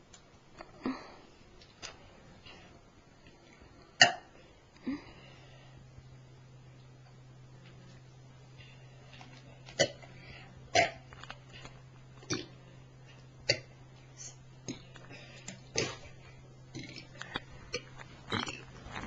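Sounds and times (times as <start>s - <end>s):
low steady hum: 0.0s - 19.0s
short sharp burps: 4.0s - 4.3s.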